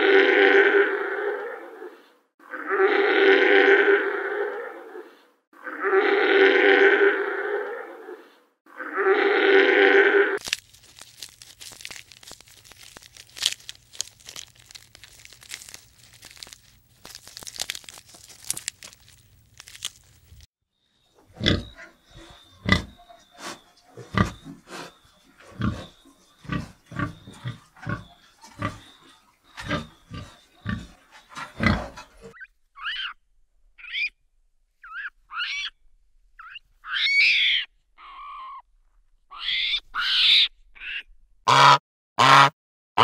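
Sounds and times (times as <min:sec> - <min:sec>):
higher arching animal calls: 0:21.1 - 0:33.2, 0:33.8 - 0:34.2, 0:34.8 - 0:35.8, 0:36.4 - 0:38.7, 0:39.3 - 0:41.8
animal grunting: 0:21.2 - 0:32.4.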